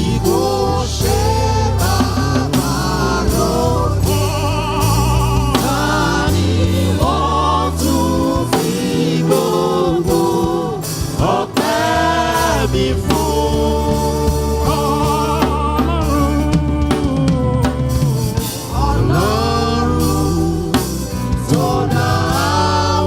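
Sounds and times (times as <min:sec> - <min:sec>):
bass guitar: 0:00.0 - 0:23.0
choir singing: 0:00.0 - 0:23.0
drum kit: 0:00.0 - 0:23.0.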